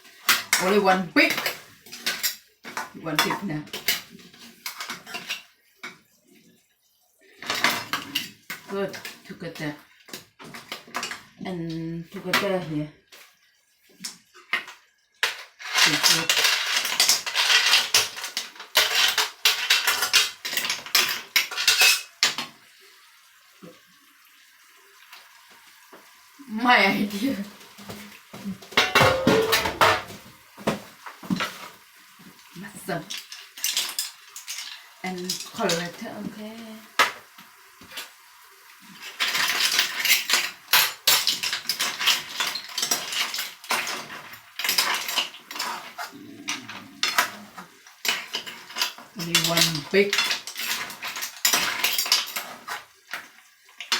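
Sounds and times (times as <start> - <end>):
utensil scraping against pot: 41.5 - 52.9.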